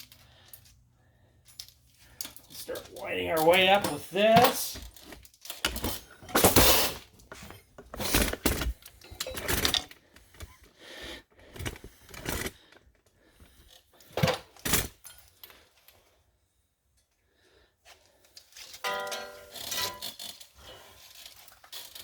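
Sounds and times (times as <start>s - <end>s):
metal tools clattering: 1.5s - 10.5s, 18.6s - 20.6s
sharp metal clanks: 18.8s - 20.2s.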